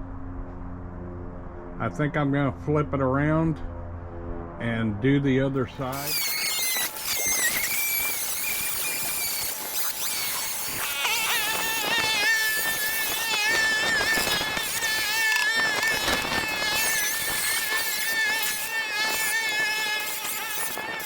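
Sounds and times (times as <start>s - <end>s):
angle grinder cutting steel: 5.6s - 21.0s.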